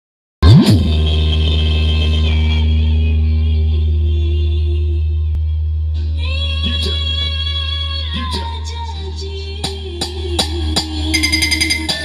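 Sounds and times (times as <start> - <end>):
loud hit with electronic sweep: 0.4 - 1.2
heavy steady bass tone: 0.4 - 12.0
held high tone: 11.1 - 12.0.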